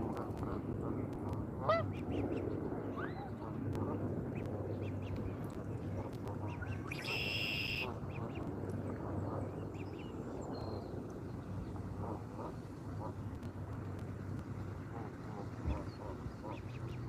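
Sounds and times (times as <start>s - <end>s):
steady low hum: 0.0s - 17.0s
waterfowl calling: 6.0s - 8.4s, 14.9s - 17.0s.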